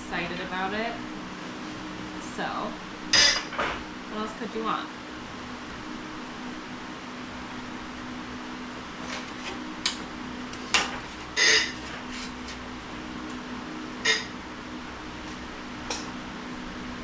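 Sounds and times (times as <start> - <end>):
steady low hum: 0.0 - 17.0
sheet steel clanking: 3.2 - 3.6.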